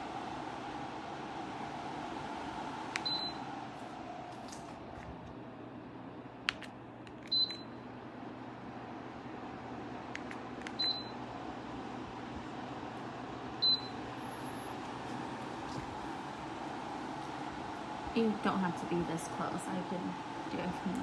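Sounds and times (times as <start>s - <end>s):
tower fan air rushing: 0.0s - 6.1s, 11.3s - 21.0s.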